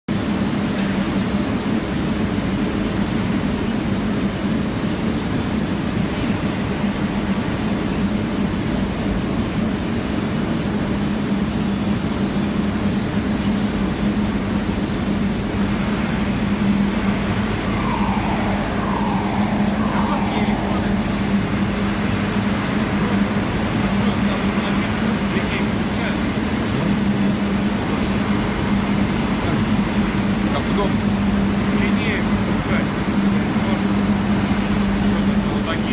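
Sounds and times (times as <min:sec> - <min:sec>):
electric arc furnace roaring: 0:17.0 - 0:26.1
short falling tones: 0:17.4 - 0:22.1.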